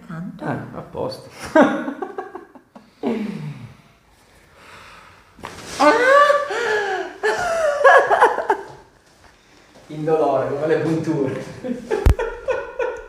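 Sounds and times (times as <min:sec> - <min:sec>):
person laughing: 0:05.8 - 0:08.8, 0:11.8 - 0:13.0.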